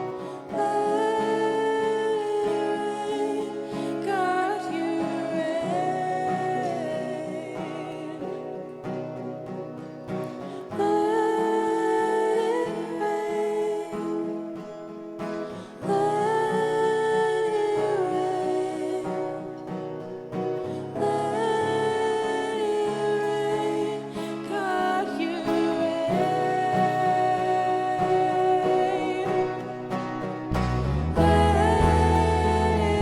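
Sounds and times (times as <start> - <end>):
singers holding long notes: 20.6 - 33.0
band playing guitar keys and bass: 30.2 - 33.0.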